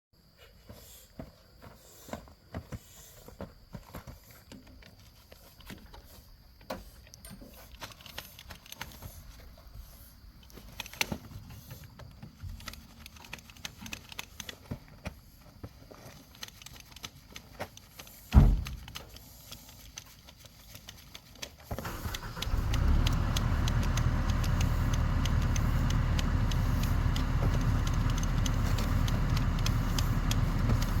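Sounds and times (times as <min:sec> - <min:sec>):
scattered clicks and rattles: 0:07.1 - 0:09.2, 0:10.4 - 0:14.8, 0:15.9 - 0:31.0
loud thump: 0:18.3 - 0:18.8
excavator engine running: 0:21.7 - 0:31.0.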